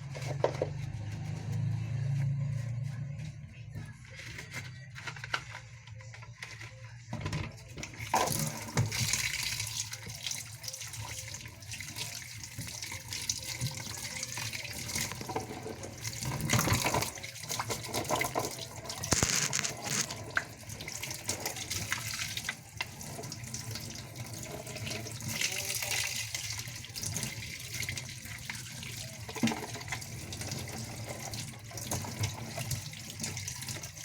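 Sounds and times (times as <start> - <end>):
tap water running and splashing: 7.2 - 34.0.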